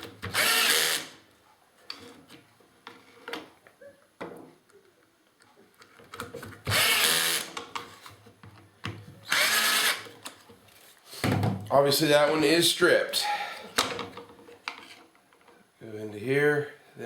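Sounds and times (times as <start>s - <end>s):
cordless drill driving screws: 0.0s - 1.2s, 6.7s - 7.6s, 9.3s - 10.1s.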